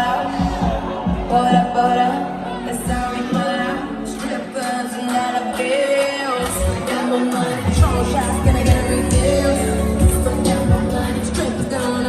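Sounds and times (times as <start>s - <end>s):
pop song with vocals: 0.0s - 12.0s
deep kick drum beat: 0.4s - 1.7s, 7.8s - 11.1s.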